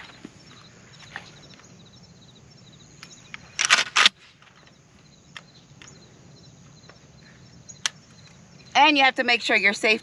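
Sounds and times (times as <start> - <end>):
pump shotgun being racked: 3.6 - 4.2.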